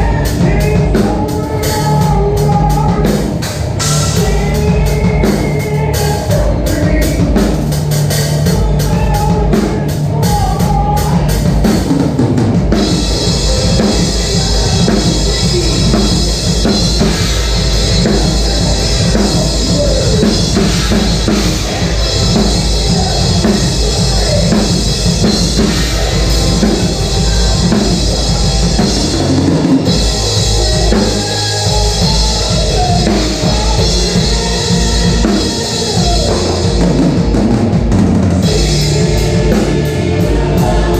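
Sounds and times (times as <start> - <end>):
loud band music: 0.0 - 40.9.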